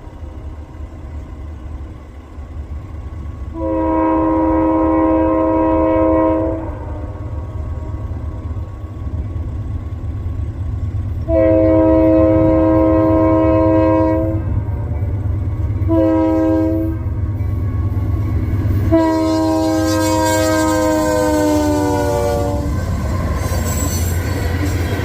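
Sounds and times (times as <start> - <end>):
low rumble of train: 0.0 - 25.0
locomotive horn blasts: 3.5 - 7.4, 11.2 - 15.2, 15.8 - 17.2, 18.8 - 24.8.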